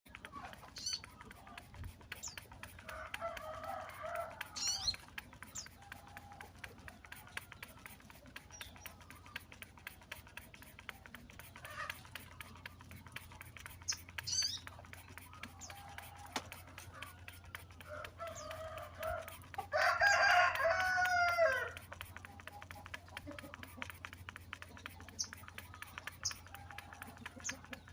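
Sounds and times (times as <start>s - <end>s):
rooster crowing: 2.8s - 4.9s, 15.6s - 21.9s.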